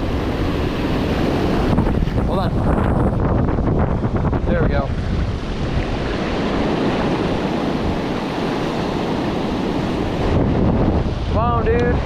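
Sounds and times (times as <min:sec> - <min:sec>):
surf breaking on beach: 0:00.0 - 0:12.0
wind buffeting microphone: 0:00.0 - 0:12.0.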